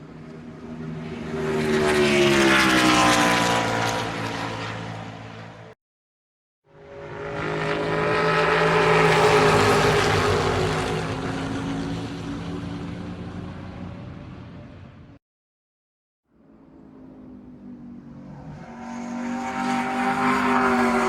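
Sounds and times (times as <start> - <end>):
race car engine passing by: 0.8 - 5.6, 6.8 - 13.7, 17.0 - 21.0.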